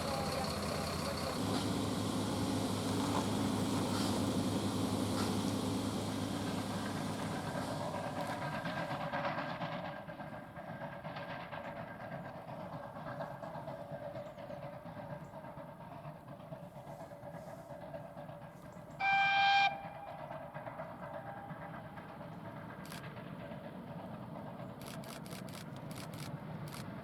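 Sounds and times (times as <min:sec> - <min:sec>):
train rumble: 0:00.0 - 0:27.0
steam whistle blast: 0:19.0 - 0:20.2.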